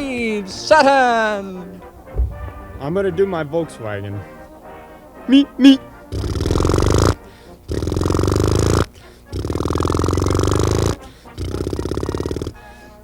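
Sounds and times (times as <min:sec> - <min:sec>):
man imitating engine with mouth: 0:05.3 - 0:12.6.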